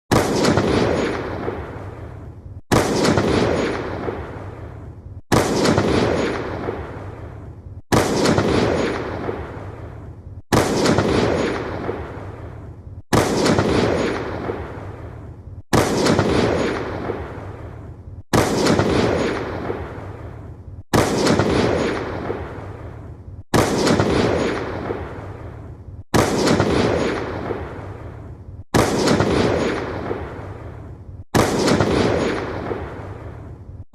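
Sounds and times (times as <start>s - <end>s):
ballista shot: 0.1s - 2.0s, 2.7s - 7.2s, 7.9s - 9.9s, 10.5s - 12.5s, 13.1s - 15.0s, 15.7s - 17.7s, 18.3s - 20.2s, 20.9s - 22.8s, 23.5s - 25.5s, 26.1s - 28.1s, 28.7s - 30.6s, 31.4s - 33.4s.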